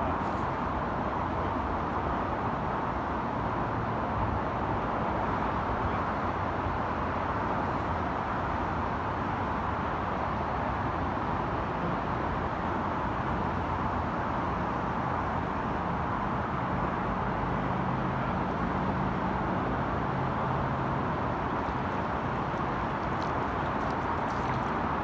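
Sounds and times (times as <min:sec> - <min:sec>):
road traffic roar: 0:15.8 - 0:25.0
low engine hum: 0:17.4 - 0:25.0.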